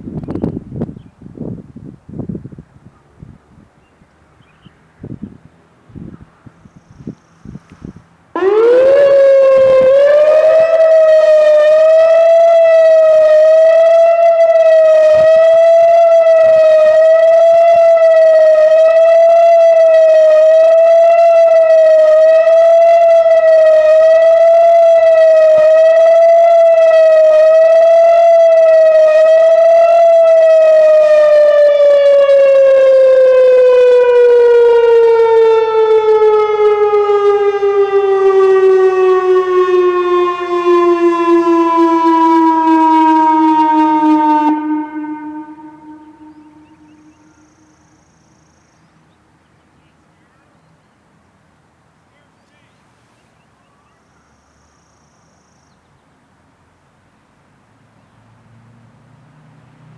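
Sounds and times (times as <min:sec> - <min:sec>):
warning siren wavering tone: 0:07.5 - 0:48.4.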